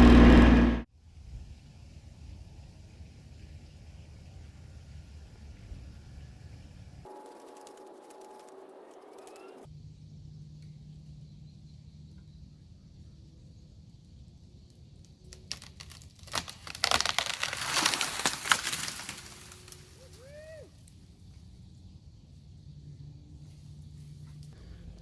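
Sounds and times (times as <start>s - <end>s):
steady low hum: 0.0s - 0.9s
branch crashing through leaves: 7.1s - 8.5s, 15.4s - 20.6s
tree branch cracking: 7.1s - 9.4s, 15.0s - 21.0s.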